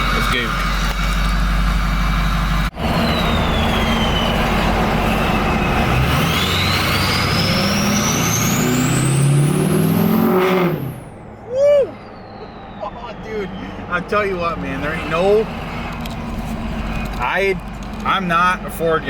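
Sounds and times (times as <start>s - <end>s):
diesel engine: 0.0s - 19.0s
turbo whistle: 2.9s - 8.8s, 11.4s - 13.8s.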